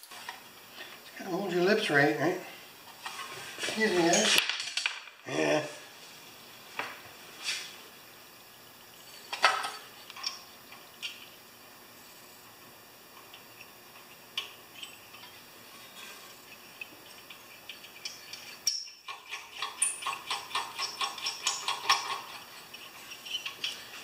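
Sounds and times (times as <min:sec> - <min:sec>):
metal nuts clicking and rattling: 0:16.7 - 0:24.0.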